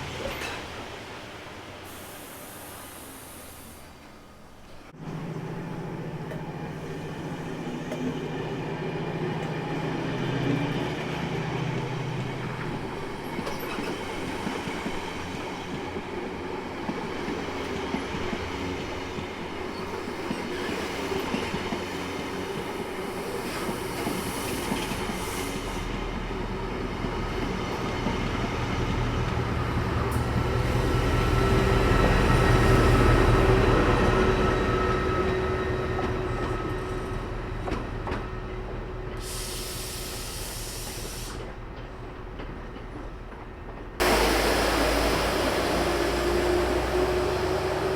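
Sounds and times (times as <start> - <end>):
train running on rails: 0.0 - 47.9.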